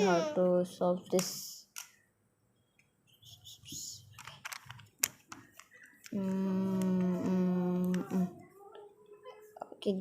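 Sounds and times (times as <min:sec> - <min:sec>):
puzzle cube clicking and rattling: 0:04.1 - 0:06.3.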